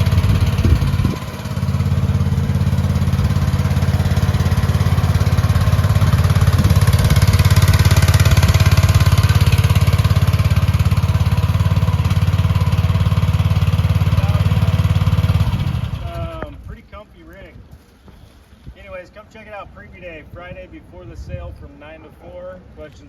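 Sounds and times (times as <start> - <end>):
excavator engine running: 0.0 - 16.7.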